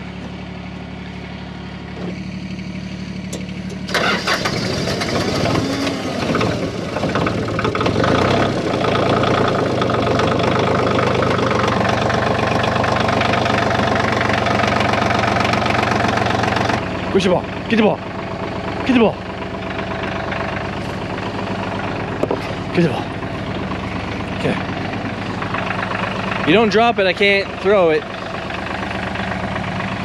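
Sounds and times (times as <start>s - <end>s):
diesel engine running: 0.0s - 30.0s
engine cranking and starting: 3.2s - 16.9s.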